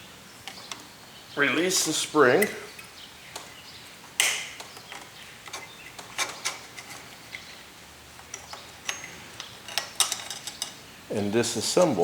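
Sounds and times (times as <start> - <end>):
small metal parts clicking: 8.1 - 10.8.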